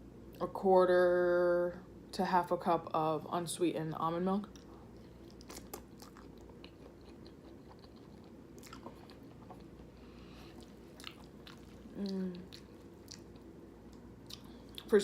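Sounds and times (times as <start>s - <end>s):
chewing clicks and smacks: 4.5s - 9.7s, 10.5s - 14.9s
person humming: 11.9s - 12.5s.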